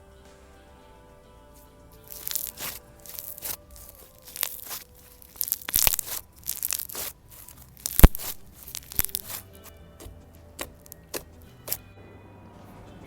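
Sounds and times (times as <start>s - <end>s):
slime crackling and tearing: 2.0s - 11.8s
sharp slime pop: 2.1s - 9.4s, 10.0s - 11.8s.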